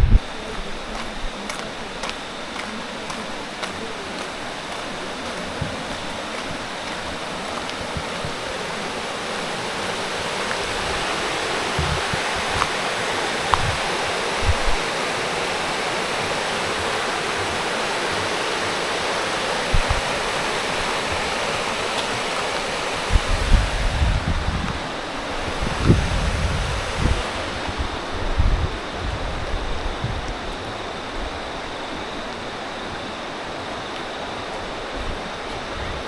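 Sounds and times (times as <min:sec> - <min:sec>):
flowing water rushing: 0:00.0 - 0:36.0.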